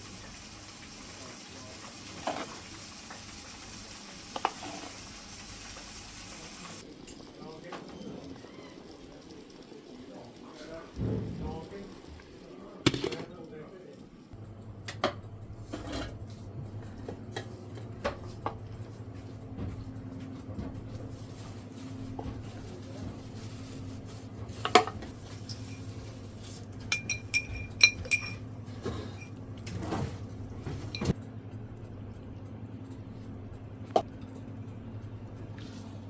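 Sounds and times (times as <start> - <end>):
utensils knocking against pots: 26.9 - 29.4.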